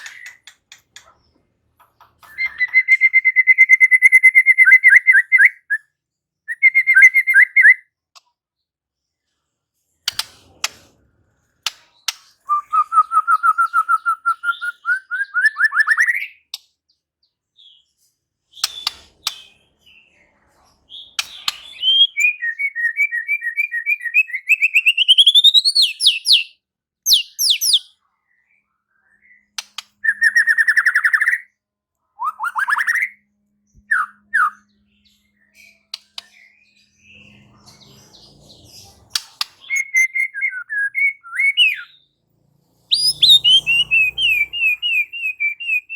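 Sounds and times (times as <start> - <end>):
bird singing rapid notes: 0.0 - 5.8, 20.9 - 27.9, 29.0 - 31.5, 32.2 - 42.2, 42.8 - 45.9
bird sharp clicks: 10.1 - 10.9, 29.6 - 29.9, 39.2 - 39.8.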